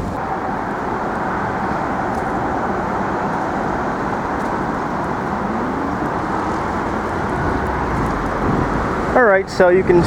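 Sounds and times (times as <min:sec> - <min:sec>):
city traffic noise: 0:00.0 - 0:10.0.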